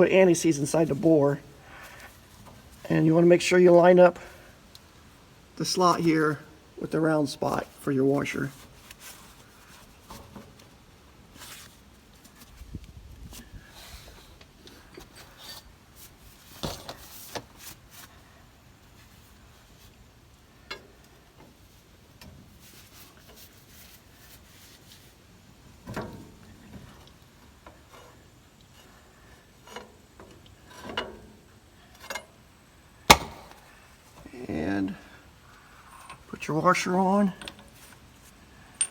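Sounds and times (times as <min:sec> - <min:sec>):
sharp metal knock: 0:33.1 - 0:33.6.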